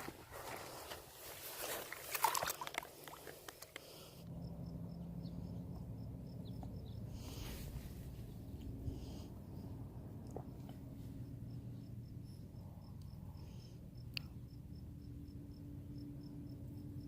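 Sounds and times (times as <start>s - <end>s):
steady low hum: 4.0s - 17.0s.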